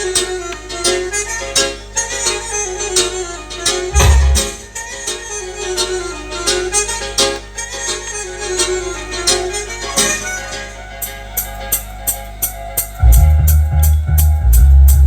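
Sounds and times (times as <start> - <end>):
music through loudspeakers: 0.0 - 15.0
heavy bass boom: 4.0 - 4.7, 13.0 - 15.0.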